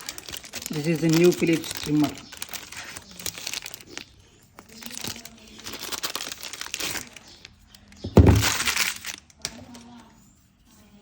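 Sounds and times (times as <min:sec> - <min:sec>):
plastic packaging crinkling: 0:00.0 - 0:09.9
loud thump: 0:08.1 - 0:08.6.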